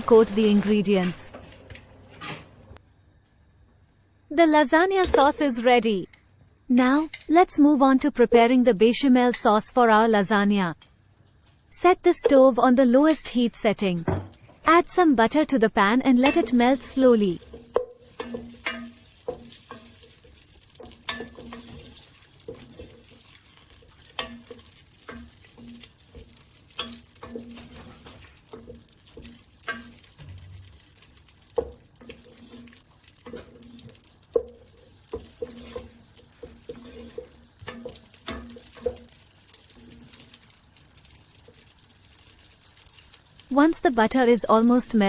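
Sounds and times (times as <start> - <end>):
butter sizzling in a pan: 0.0 - 1.3, 5.2 - 45.0
utensil scraping a pan: 16.3 - 30.8, 31.5 - 40.6.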